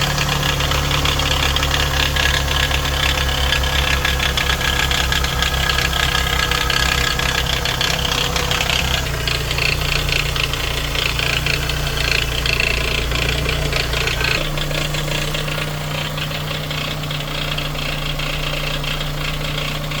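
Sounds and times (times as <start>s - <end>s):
car engine idling: 0.0s - 20.0s
fast metallic rattle: 0.0s - 20.0s.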